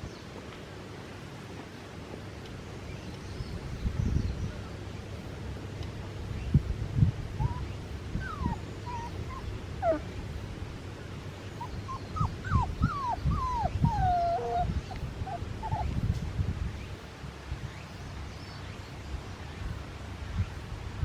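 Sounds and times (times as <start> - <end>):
puppies making high calls: 7.4 - 10.1, 11.6 - 16.0.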